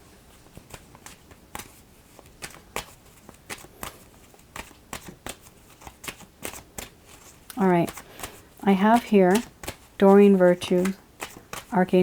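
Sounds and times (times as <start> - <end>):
cards being shuffled: 0.5 - 12.0.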